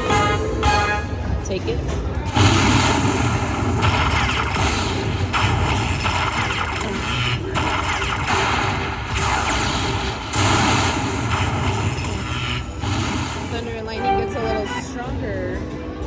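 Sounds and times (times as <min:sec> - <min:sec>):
casino noise hum: 0:00.0 - 0:16.0
slot machine crash-like blasts: 0:02.3 - 0:14.7.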